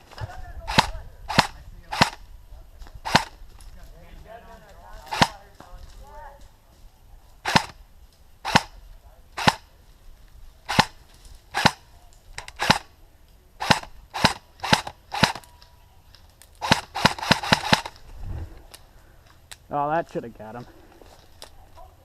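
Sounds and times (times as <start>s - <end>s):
airsoft rifle shots: 0.6s - 2.2s, 3.0s - 3.4s, 5.1s - 5.4s, 7.4s - 7.8s, 8.4s - 8.8s, 9.4s - 9.7s, 10.7s - 11.8s, 12.4s - 12.9s, 13.6s - 15.5s, 16.6s - 18.0s.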